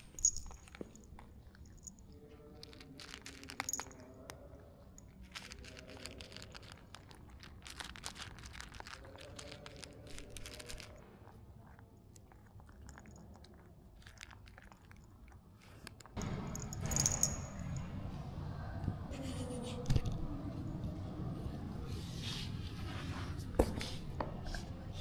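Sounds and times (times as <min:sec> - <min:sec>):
cat crunching food: 0:00.0 - 0:19.0.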